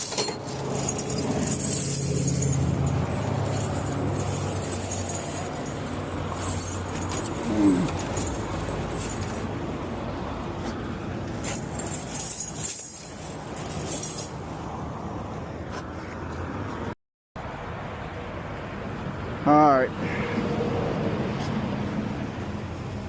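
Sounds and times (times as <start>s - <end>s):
tire chains jingling: 0.0s - 14.8s.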